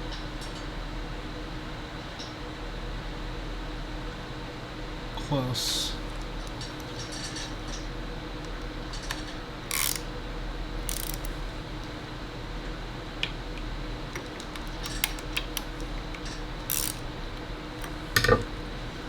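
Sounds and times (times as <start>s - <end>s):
metallic tool clicks and scrapes: 10.9s - 11.3s, 16.2s - 17.0s.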